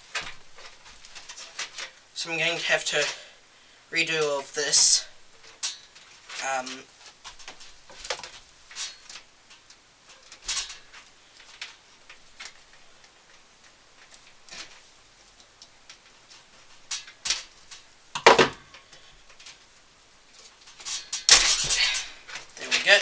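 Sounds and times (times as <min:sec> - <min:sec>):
small clicks and light knocks: 0:05.4 - 0:21.4.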